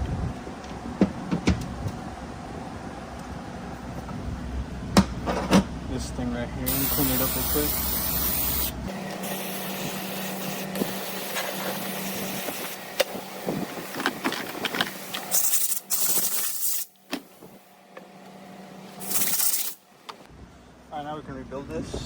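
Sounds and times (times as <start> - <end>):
hissing spray blasts: 6.7 - 17.4, 19.0 - 19.9.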